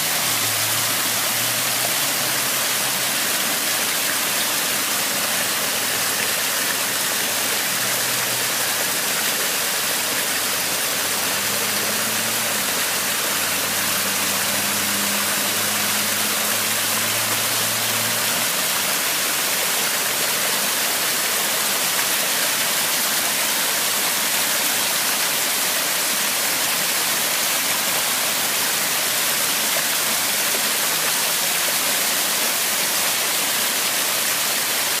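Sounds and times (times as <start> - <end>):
rushing flowing water: 0.0 - 35.0.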